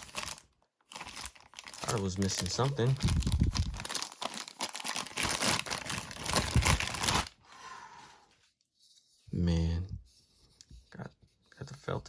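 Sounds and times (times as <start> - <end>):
packaging crinkling and rustling: 0.0 - 7.4.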